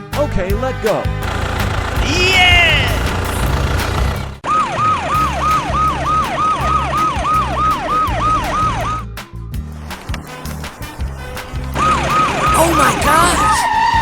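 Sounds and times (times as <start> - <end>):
background music with beat: 5.2 - 14.0.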